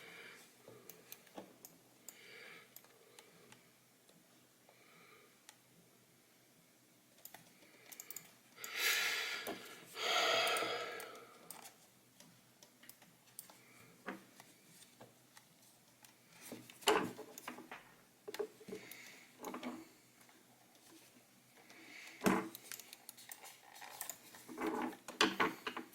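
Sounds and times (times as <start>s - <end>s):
plastic parts clicking and knocking: 15.9s - 19.8s, 21.6s - 25.9s.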